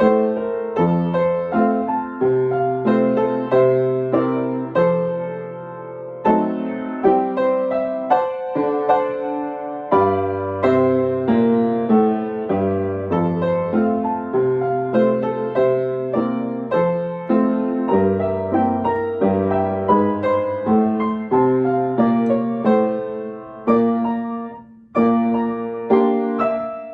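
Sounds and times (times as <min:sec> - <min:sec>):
piano chords over bass notes: 0:00.0 - 0:26.9.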